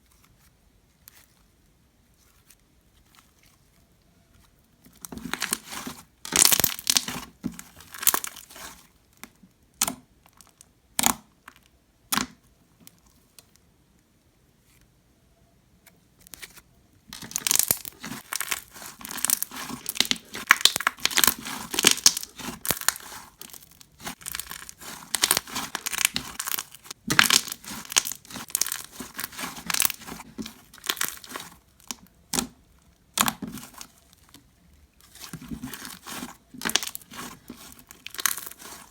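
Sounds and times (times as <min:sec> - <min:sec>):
hands squishing slime: 0:04.9 - 0:08.9, 0:16.5 - 0:34.4, 0:35.0 - 0:38.9.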